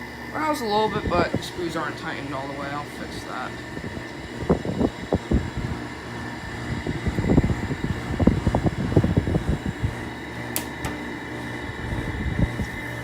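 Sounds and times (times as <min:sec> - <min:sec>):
air conditioner humming: 0:00.0 - 0:13.0.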